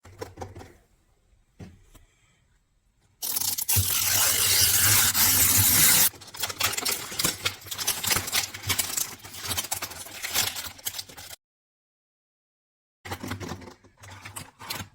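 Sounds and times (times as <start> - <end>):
packaging crinkling: 3.2 - 11.3
packaging tearing: 3.2 - 11.3.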